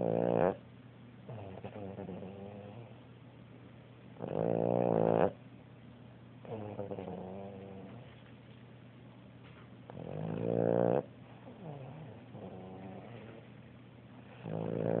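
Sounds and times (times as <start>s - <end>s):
dog snoring: 0.0s - 0.6s, 1.2s - 3.0s, 4.2s - 5.4s, 6.4s - 8.2s, 9.9s - 13.5s, 14.2s - 15.0s.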